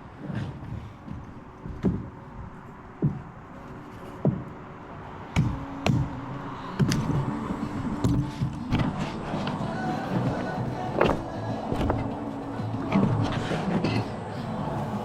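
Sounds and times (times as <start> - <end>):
sharp knocks: 5.3 - 7.2.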